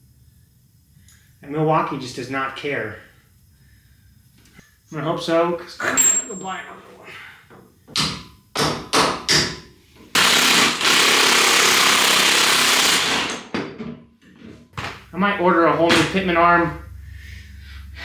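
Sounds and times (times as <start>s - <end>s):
impact wrench hammering: 7.9s - 13.8s.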